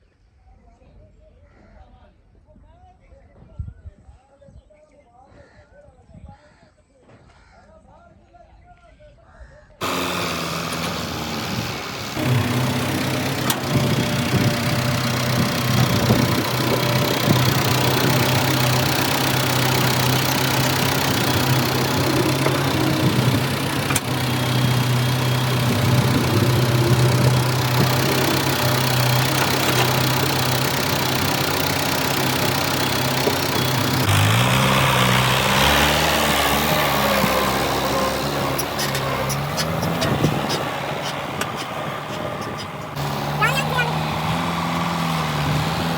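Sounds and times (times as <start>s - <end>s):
heavy machinery humming and clattering: 9.8s - 45.9s.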